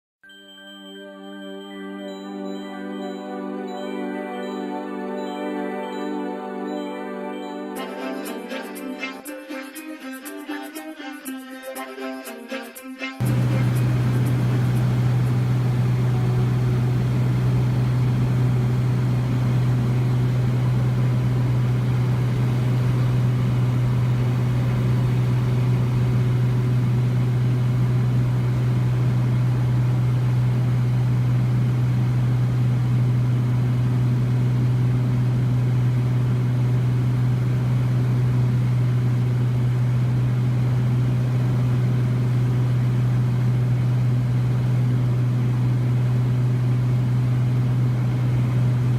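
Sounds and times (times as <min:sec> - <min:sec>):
propeller plane engine droning: 0:13.2 - 0:48.9.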